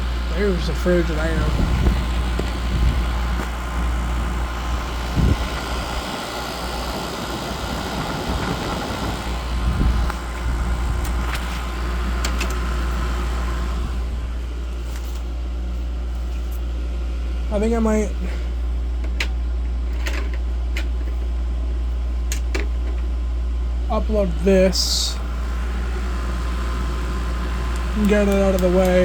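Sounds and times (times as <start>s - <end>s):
fans rushing: 0.0s - 16.7s, 23.9s - 29.0s
compressor hum: 0.0s - 29.0s.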